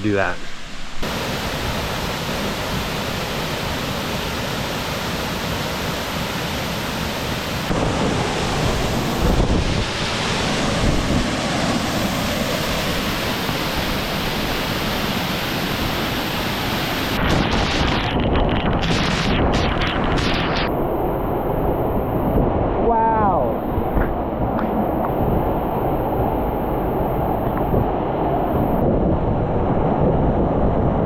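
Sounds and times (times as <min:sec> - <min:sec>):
waterfall rushing: 0:01.0 - 0:17.3.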